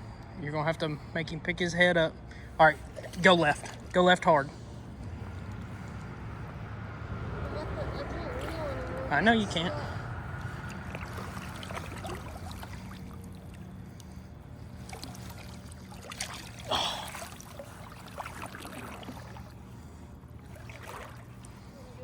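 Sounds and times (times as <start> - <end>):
flowing river water: 2.8 - 22.0
small water splashes: 2.9 - 4.2, 9.8 - 21.8.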